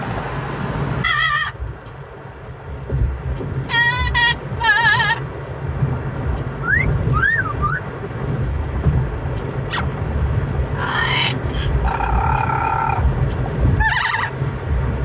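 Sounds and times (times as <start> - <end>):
car road rumble: 0.0 - 15.0
parrot squeak: 1.0 - 1.5, 3.7 - 5.2, 6.7 - 7.9, 10.8 - 13.0, 13.8 - 14.4
parrot whistling: 1.0 - 1.6, 3.7 - 5.3, 6.6 - 7.9, 9.7 - 10.0, 10.8 - 13.0, 13.8 - 14.4.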